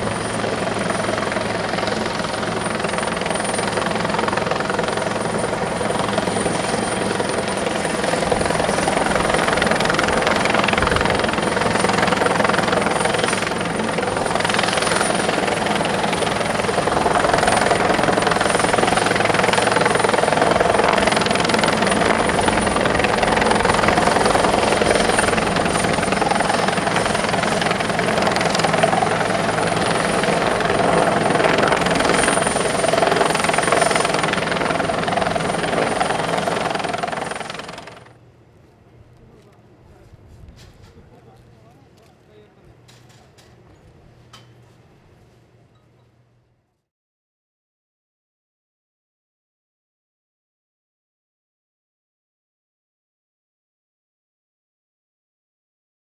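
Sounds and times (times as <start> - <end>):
helicopter rotor and turbine: 0.0 - 38.3.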